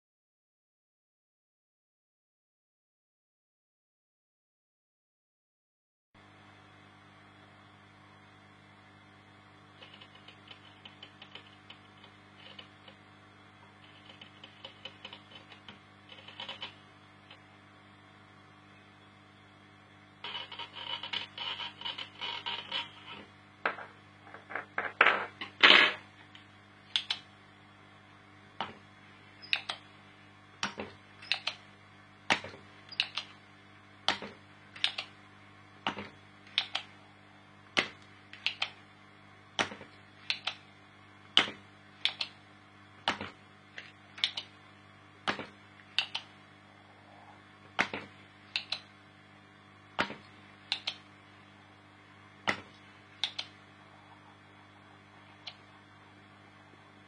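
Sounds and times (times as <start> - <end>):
steady low hum: 6.2 - 57.0
sharp clicks: 26.9 - 27.3, 29.4 - 29.8, 30.6 - 31.6, 32.3 - 33.4, 34.1 - 35.1, 35.9 - 36.9, 37.8 - 38.8, 39.6 - 40.6, 41.4 - 42.4, 44.2 - 44.5, 46.0 - 46.3, 47.8 - 48.9, 50.7 - 51.0, 53.2 - 53.6.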